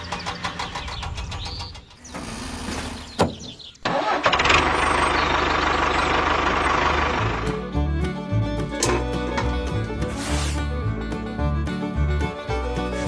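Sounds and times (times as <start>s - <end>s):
small engine running: 2.0s - 3.2s, 3.9s - 7.8s.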